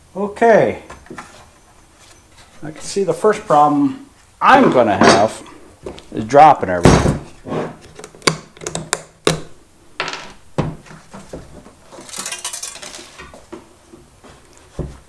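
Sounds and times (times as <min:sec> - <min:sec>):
metal parts and tools clinking: 0:11.9 - 0:13.3.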